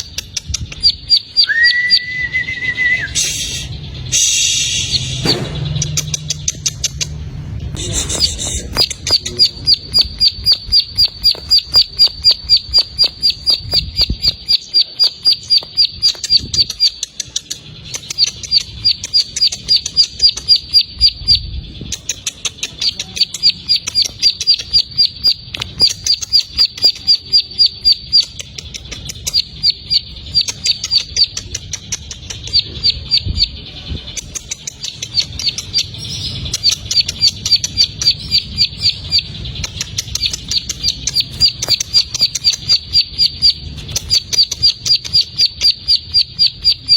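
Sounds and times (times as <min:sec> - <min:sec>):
bird singing sharp high notes: 0:00.8 - 0:22.0, 0:34.7 - 0:46.9.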